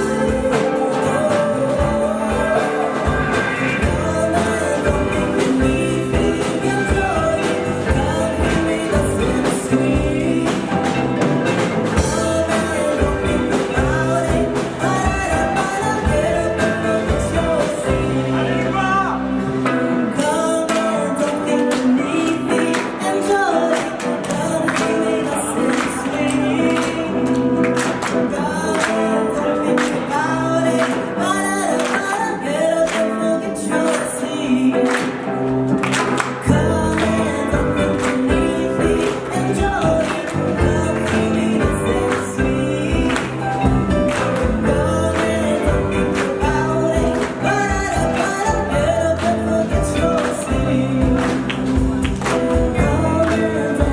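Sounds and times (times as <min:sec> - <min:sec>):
heavy bass: 0:00.0 - 0:20.5, 0:35.5 - 0:53.9
person singing: 0:00.0 - 0:53.9
rock band playing: 0:00.0 - 0:53.9.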